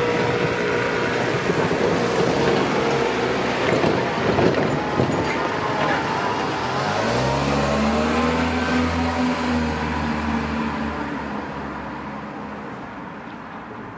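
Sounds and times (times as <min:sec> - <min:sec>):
vehicle engine accelerating: 0:00.0 - 0:11.8.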